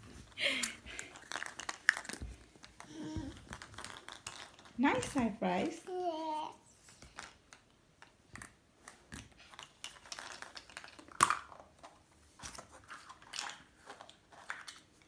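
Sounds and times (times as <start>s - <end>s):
small clicks and crinkles of handling: 0.1s - 5.2s, 6.9s - 15.0s.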